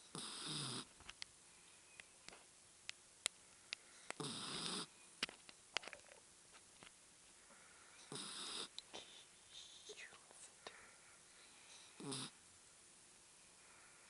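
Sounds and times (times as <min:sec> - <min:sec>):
dog snoring: 0:00.0 - 0:00.9, 0:04.2 - 0:04.9, 0:08.0 - 0:08.7, 0:11.9 - 0:12.4.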